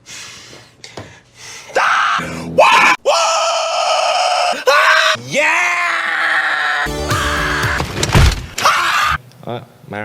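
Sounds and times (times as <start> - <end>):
man yelling and screaming: 1.8 - 7.8.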